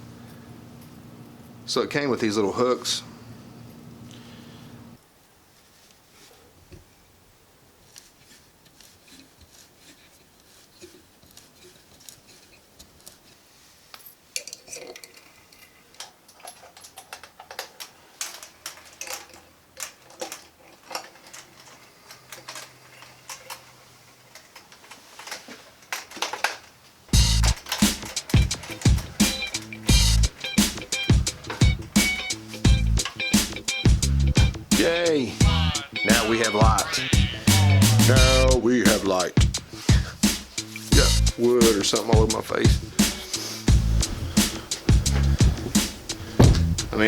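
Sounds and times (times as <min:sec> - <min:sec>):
metal chains clinking: 0:13.9 - 0:24.6, 0:27.2 - 0:34.7
loud knocks and thumps: 0:44.9 - 0:47.0.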